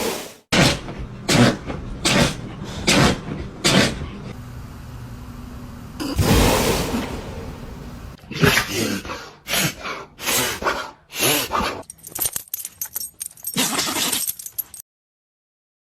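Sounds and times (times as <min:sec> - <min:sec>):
dog sneezing: 0:00.6 - 0:04.0.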